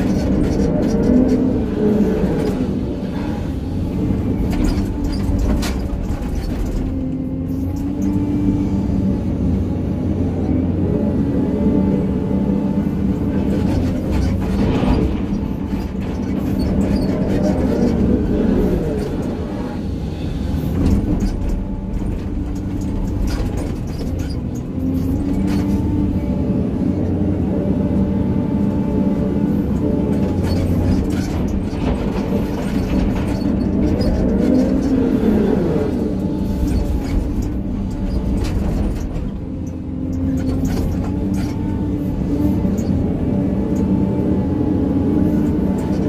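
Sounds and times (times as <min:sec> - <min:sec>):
excavator diesel engine: 0:00.0 - 0:46.0.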